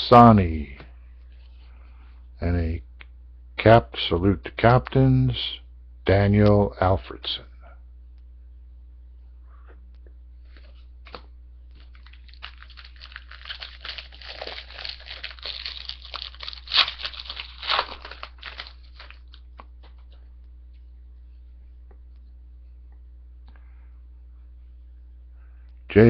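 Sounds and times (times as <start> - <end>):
plastic card wrapper crinkling: 11.0 - 20.2.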